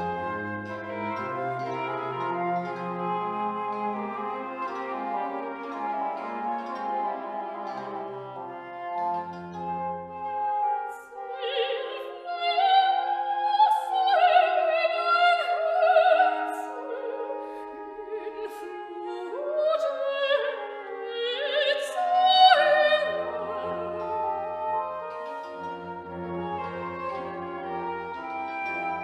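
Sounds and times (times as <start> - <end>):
orchestral accompaniment: 0.0 - 29.0
operatic singer with vibrato: 10.9 - 24.6.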